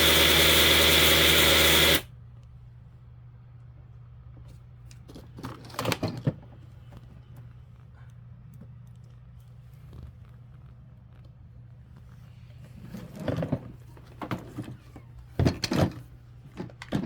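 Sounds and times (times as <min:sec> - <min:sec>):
machine low hum: 0:00.0 - 0:05.2
clicking clattering handling noise: 0:11.9 - 0:17.0.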